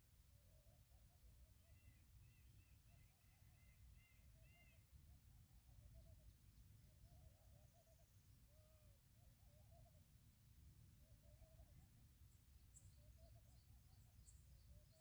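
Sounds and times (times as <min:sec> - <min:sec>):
faint bird chirping: 0:11.1 - 0:15.0.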